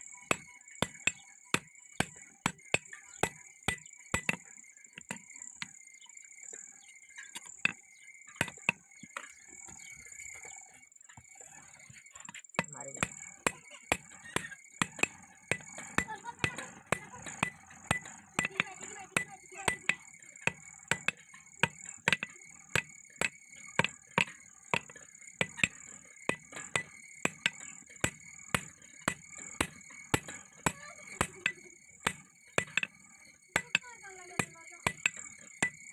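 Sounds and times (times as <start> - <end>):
metallic ringing: 12.6 - 35.9.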